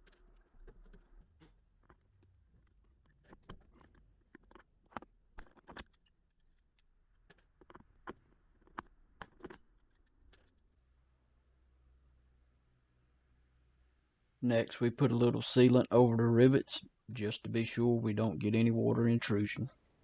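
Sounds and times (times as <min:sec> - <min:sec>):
rivets being set clicking: 0:00.0 - 0:10.6.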